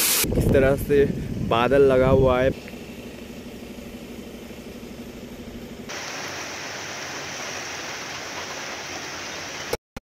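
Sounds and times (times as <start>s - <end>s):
steady rushing hiss: 0.0s - 0.4s, 2.5s - 9.8s
engine idling: 0.7s - 7.4s.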